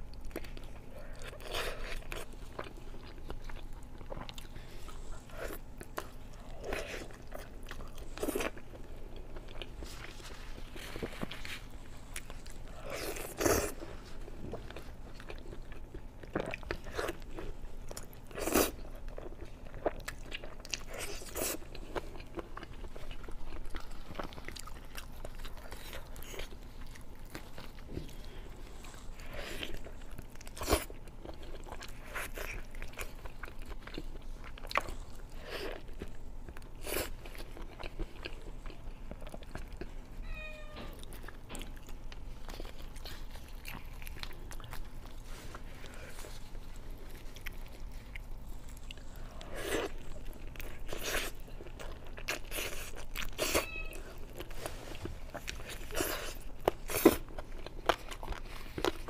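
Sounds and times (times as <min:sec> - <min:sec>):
person biting and chewing: 0:45.9 - 0:54.5.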